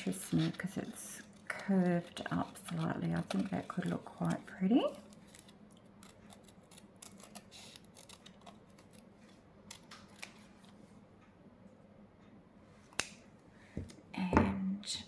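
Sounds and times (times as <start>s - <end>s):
scissors snipping paper: 0.0s - 9.1s, 9.7s - 10.5s.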